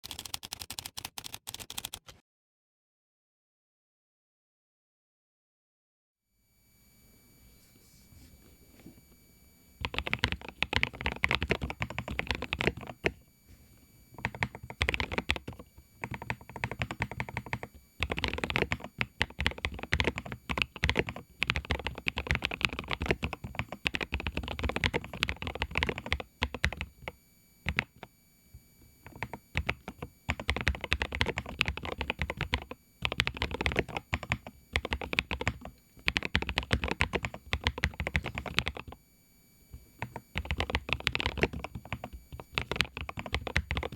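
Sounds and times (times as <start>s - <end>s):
mechanical keyboard typing: 0.0s - 2.2s, 9.8s - 13.2s, 14.2s - 28.1s, 29.0s - 39.0s, 39.9s - 43.9s.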